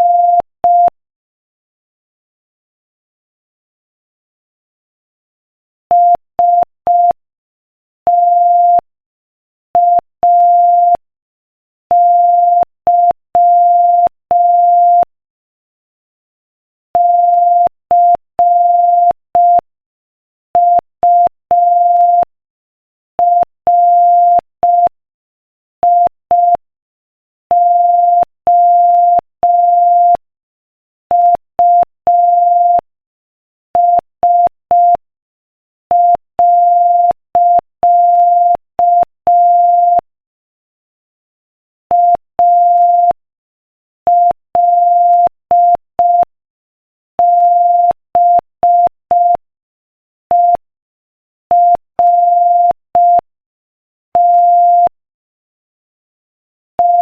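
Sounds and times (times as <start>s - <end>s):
morse code beeps: 0.0s - 0.9s, 8.1s - 8.8s, 9.8s - 11.0s, 11.9s - 15.1s, 17.0s - 19.6s, 20.6s - 22.3s, 23.2s - 24.9s, 27.6s - 30.2s, 31.1s - 32.8s, 33.8s - 35.0s, 35.9s - 40.0s, 41.9s - 43.2s, 44.1s - 46.3s, 47.2s - 49.4s, 50.3s - 50.6s, 51.5s - 53.3s, 54.2s - 55.0s, 56.8s - 57.0s.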